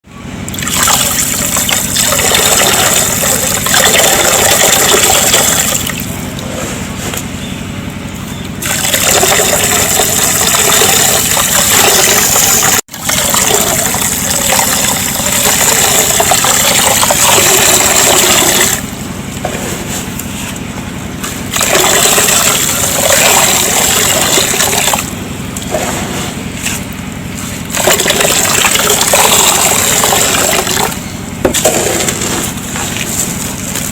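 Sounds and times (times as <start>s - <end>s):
dust pouring into a tub: 31.6s - 33.9s.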